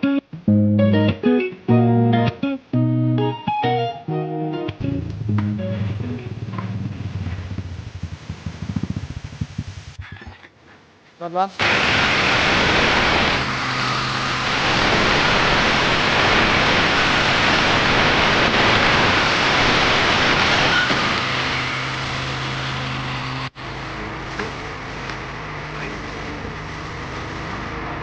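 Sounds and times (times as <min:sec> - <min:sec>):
motorized cart engine running: 0:04.8 - 0:10.0.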